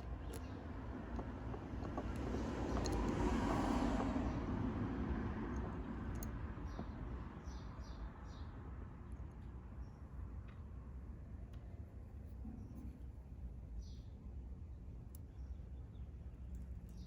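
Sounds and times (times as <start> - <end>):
vehicle passing by: 2.2 - 5.9.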